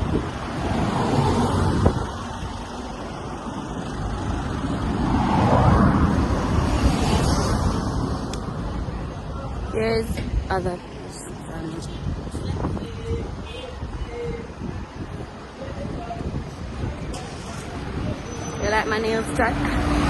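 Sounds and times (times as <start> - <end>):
vehicle passing: 0.0 - 13.3, 17.3 - 20.0
low traffic rumble: 0.0 - 20.0.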